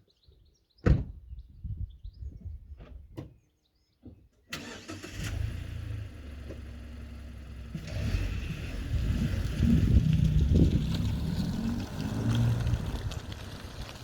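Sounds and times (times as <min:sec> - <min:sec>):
wind on microphone: 0:01.0 - 0:03.2, 0:08.5 - 0:13.4
car engine starting and idling: 0:04.5 - 0:14.0
low rumble: 0:08.3 - 0:14.0.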